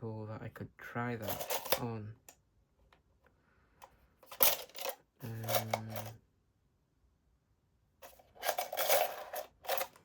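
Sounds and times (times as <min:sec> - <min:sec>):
metal tools clicking and rattling: 0:01.2 - 0:01.9, 0:04.3 - 0:06.2, 0:08.3 - 0:10.0.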